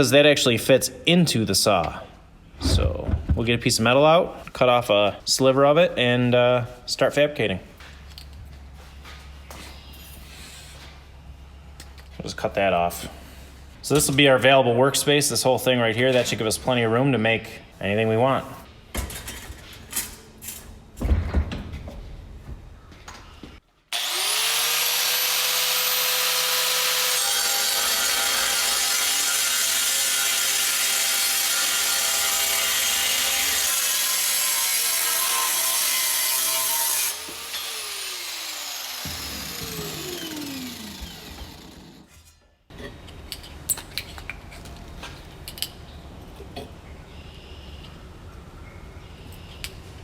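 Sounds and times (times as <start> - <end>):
power tool whine: 23.9 - 42.1
power tool cutting metal: 23.9 - 42.2.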